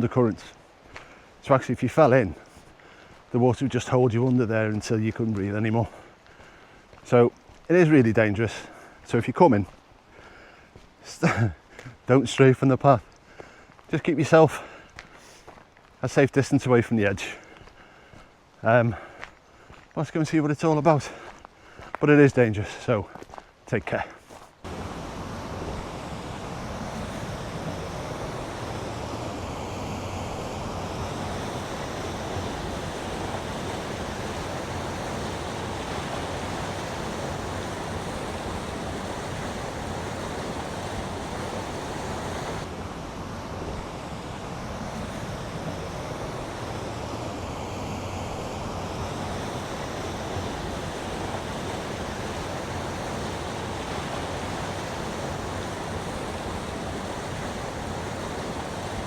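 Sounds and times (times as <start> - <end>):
river water rushing: 23.8 - 59.0.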